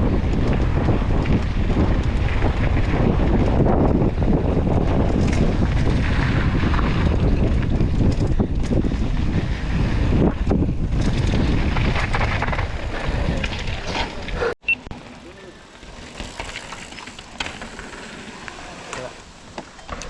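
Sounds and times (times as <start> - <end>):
wind buffeting microphone: 0.0 - 14.6.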